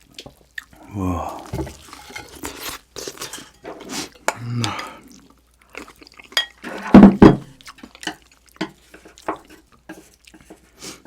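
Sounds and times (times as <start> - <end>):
utensils clinking against dishes: 2.0 - 4.1.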